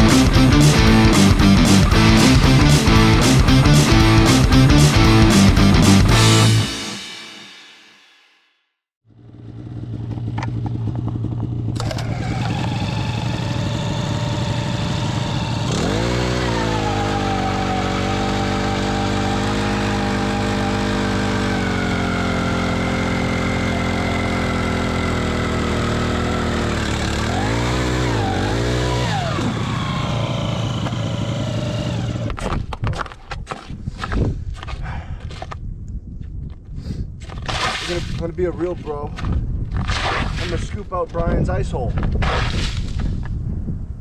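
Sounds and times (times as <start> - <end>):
small gasoline engine revving: 0.0 - 6.8, 9.1 - 32.4.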